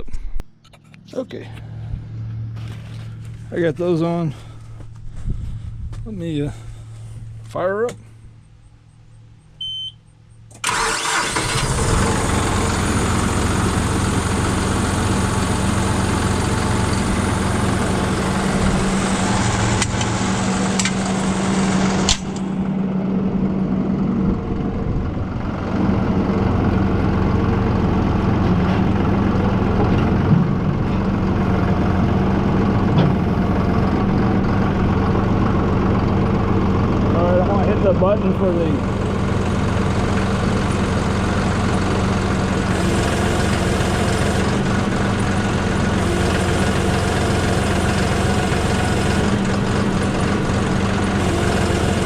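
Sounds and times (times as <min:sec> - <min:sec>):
tractor diesel engine idling: 0:01.1 - 0:52.0
short beep: 0:08.4 - 0:10.4.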